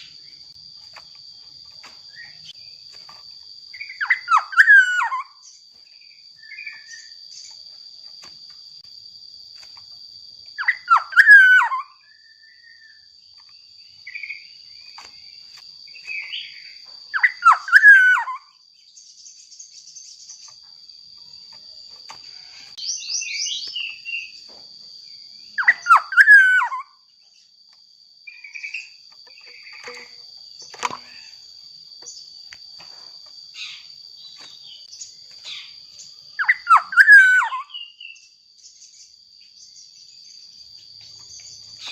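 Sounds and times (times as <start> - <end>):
soft bird chirps: 0.0 - 8.8, 9.5 - 41.9
high insect drone: 0.0 - 41.9
fluty whistled bird song: 2.1 - 2.6, 3.7 - 7.6, 10.6 - 13.2, 15.9 - 20.6, 22.3 - 24.4, 25.2 - 27.5, 28.2 - 30.2, 33.6 - 40.5.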